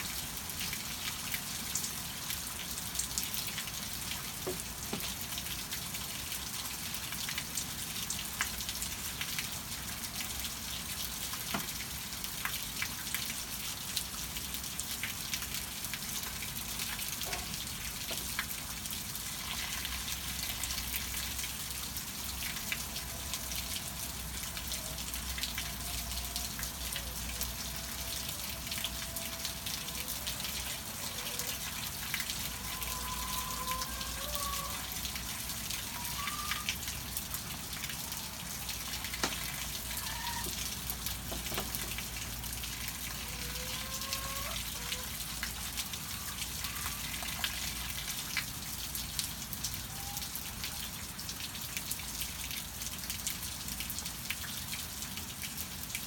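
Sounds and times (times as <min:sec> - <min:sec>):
steady rain falling: 0:00.0 - 0:56.0
water drips: 0:00.2 - 0:56.0
hens clucking softly: 0:43.2 - 0:45.2.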